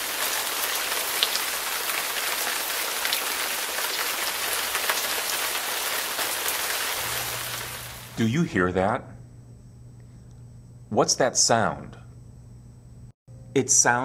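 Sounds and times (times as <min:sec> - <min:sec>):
steady rain falling: 0:00.0 - 0:08.2.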